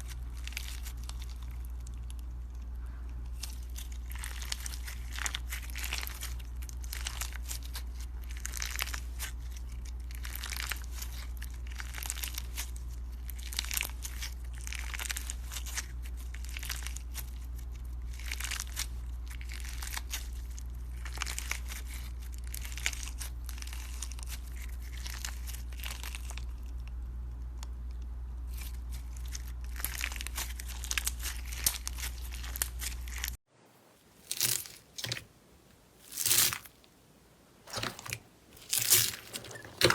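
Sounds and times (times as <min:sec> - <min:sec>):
steady low hum: 0:00.0 - 0:39.9
slime crackling and popping: 0:03.3 - 0:17.5, 0:28.5 - 0:33.4, 0:34.2 - 0:35.3, 0:36.0 - 0:36.9, 0:37.7 - 0:39.9.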